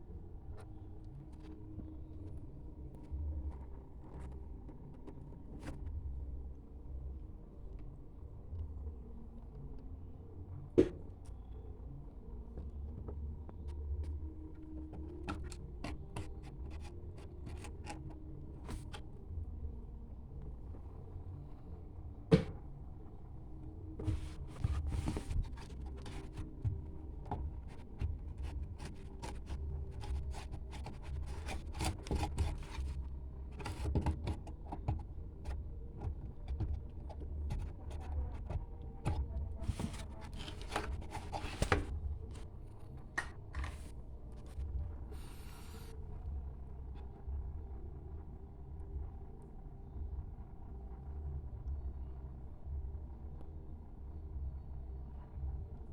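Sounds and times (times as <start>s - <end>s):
clicks and rattles of hand work: 24.0s - 42.0s.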